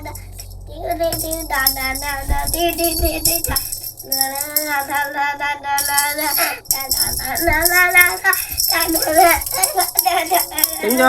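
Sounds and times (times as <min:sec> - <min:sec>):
rattling shaker percussion: 0:00.0 - 0:11.0.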